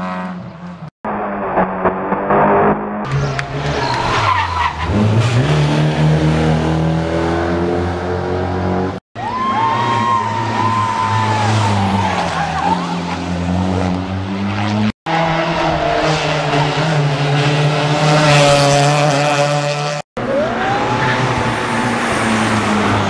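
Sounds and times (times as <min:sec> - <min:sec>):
rally car engines revving: 0:00.0 - 0:23.0.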